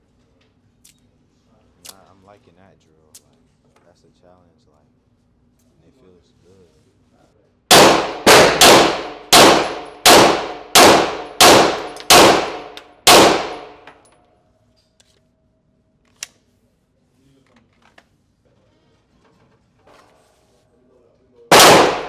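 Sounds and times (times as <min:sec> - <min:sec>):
pistol shots ringing out: 0:07.7 - 0:13.9, 0:21.5 - 0:22.0.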